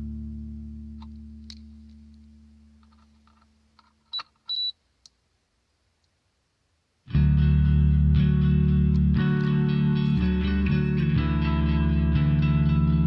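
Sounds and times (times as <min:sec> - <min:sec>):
short high-pitched electronic beeps: 0:04.1 - 0:04.8
background music: 0:07.1 - 0:13.0.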